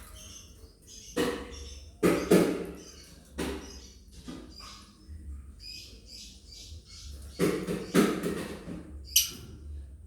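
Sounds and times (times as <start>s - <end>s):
lovebirds chirping: 9.1s - 9.4s.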